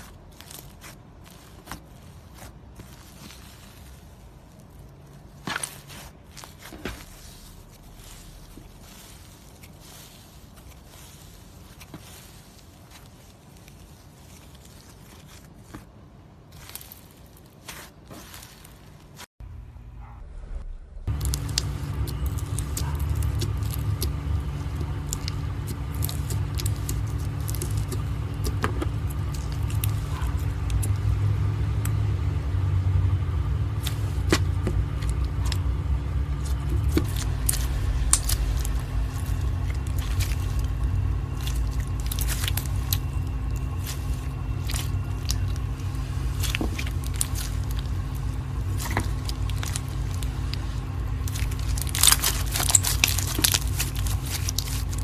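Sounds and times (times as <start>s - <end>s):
low rumble with faint hum: 0.0s - 55.0s
slime crackling pops: 36.4s - 55.0s.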